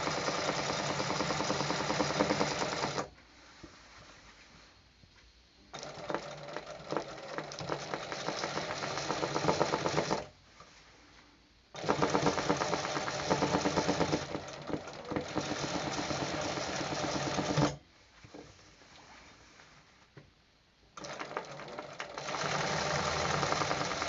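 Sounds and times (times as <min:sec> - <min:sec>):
sewing machine stitching: 0:00.0 - 0:03.1, 0:05.7 - 0:10.4, 0:11.8 - 0:17.8, 0:21.0 - 0:24.0.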